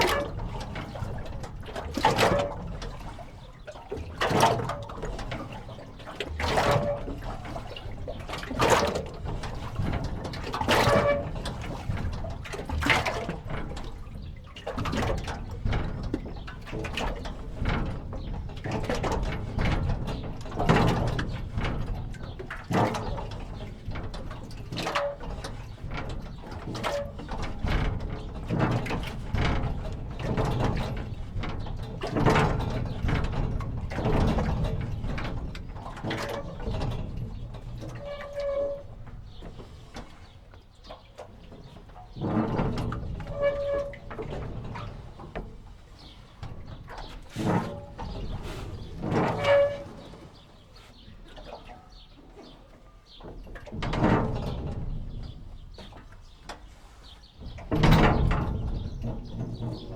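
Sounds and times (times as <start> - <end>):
jetty squeaks: 37.9 - 39.5, 43.2 - 44.4, 47.0 - 50.4, 57.5 - 59.9.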